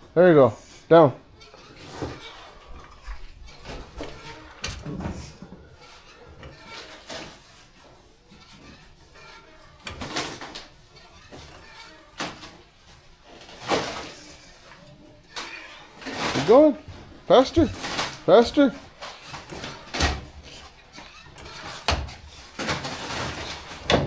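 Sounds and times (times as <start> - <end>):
clunks and knocks of car parts: 21.4 - 24.0.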